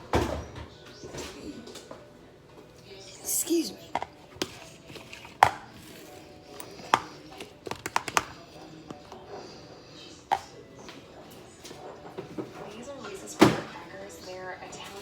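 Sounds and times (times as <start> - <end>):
food items tapping on serving board: 6.9 - 8.3.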